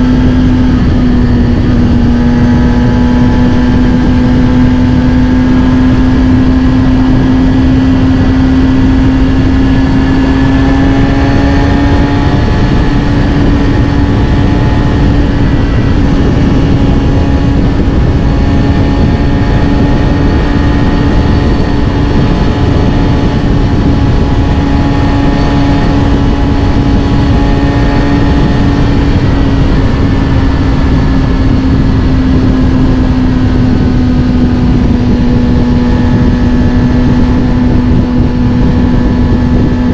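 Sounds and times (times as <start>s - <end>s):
constant rush of noise: 0.0s - 39.9s
motorcycle engine running: 0.0s - 39.9s.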